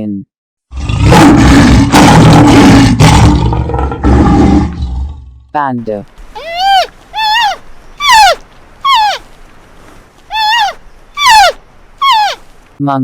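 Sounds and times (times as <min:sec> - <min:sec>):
panda bleating calls: 0:06.3 - 0:09.3, 0:10.3 - 0:12.5.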